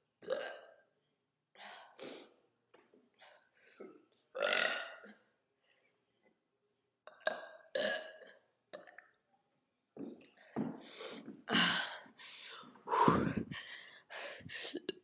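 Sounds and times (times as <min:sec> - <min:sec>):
woman burping: 0:00.2 - 0:00.8, 0:04.3 - 0:05.2, 0:07.1 - 0:09.0
throat sounds: 0:12.8 - 0:13.7.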